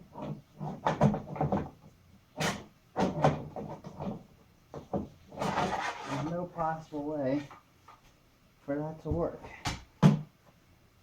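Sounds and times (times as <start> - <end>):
plastic knocks clacks and scrapes: 0.0 - 6.4.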